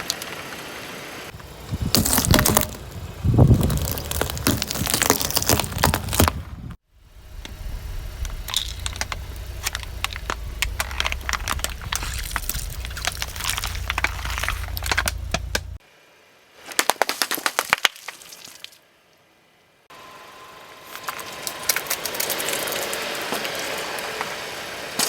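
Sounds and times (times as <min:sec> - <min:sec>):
low rumble of car: 0:00.0 - 0:15.8
tyres crushing objects: 0:01.3 - 0:06.8, 0:08.2 - 0:15.8, 0:16.7 - 0:18.3
sharp cracks: 0:07.4 - 0:15.8, 0:16.7 - 0:18.4.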